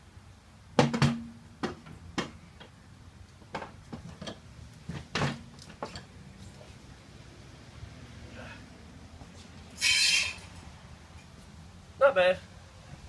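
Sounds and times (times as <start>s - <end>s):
metallic knocks and clunks: 0.8s - 2.7s, 3.5s - 6.1s.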